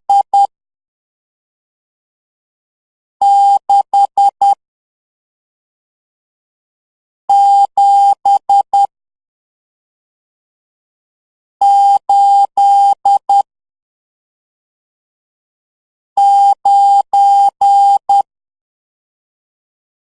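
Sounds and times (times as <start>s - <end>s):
morse code beeps: 3.2s - 4.6s, 11.6s - 13.4s, 16.2s - 18.2s.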